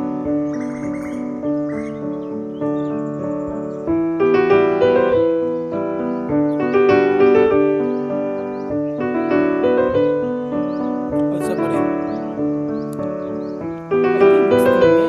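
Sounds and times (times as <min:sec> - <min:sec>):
piano melody: 0:00.0 - 0:15.0
faint high bird chirps: 0:00.4 - 0:04.0, 0:09.9 - 0:14.5.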